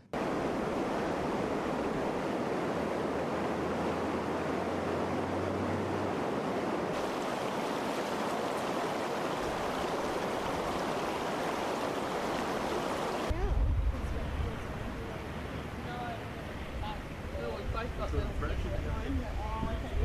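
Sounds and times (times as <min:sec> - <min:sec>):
floodwater rushing: 0:00.0 - 0:20.0.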